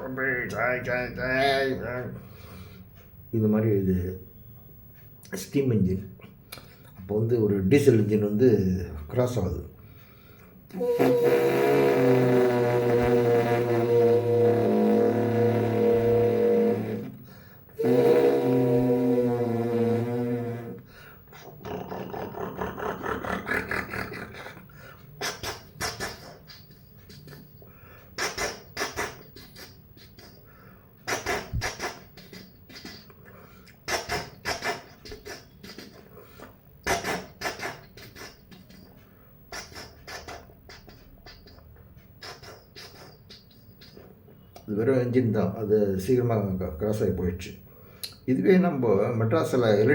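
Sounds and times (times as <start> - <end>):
man imitating a train by mouth: 10.7 - 27.6, 28.2 - 44.7.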